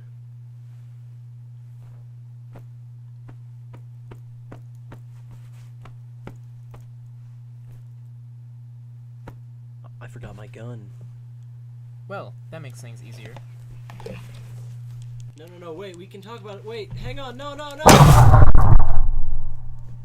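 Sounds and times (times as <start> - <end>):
steady low hum: 17.9 - 20.0.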